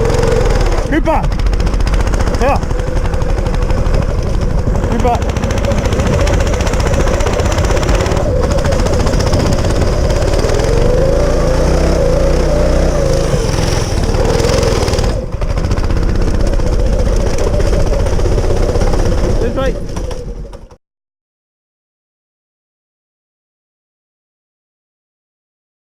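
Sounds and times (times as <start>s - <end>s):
go-kart engine revving: 0.0s - 20.8s.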